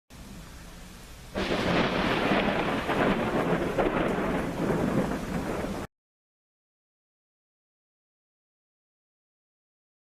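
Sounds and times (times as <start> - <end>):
falling rain: 0.1 - 5.9
thunderclap rolling: 1.3 - 5.9.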